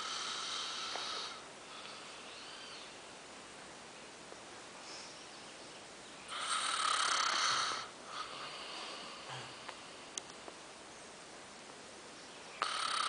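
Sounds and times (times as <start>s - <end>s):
man snoring: 0.0s - 1.4s, 6.3s - 9.6s, 12.6s - 13.0s
soft breath: 4.8s - 5.4s, 7.4s - 10.2s.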